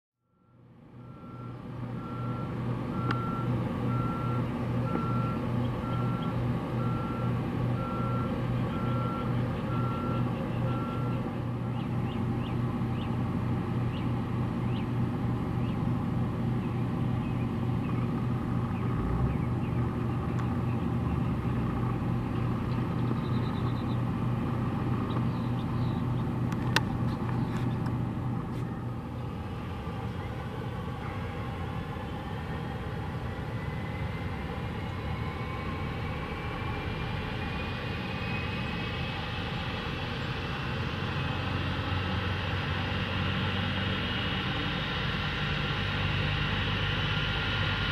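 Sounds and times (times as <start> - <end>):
reversing alarm beeping: 0.2 - 11.2
low engine drone: 0.2 - 47.9.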